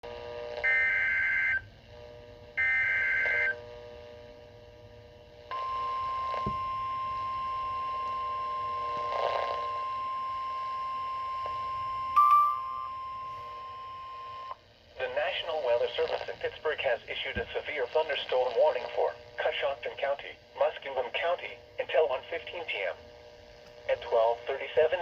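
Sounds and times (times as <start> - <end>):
steady attention tone: 9.6 - 14.6.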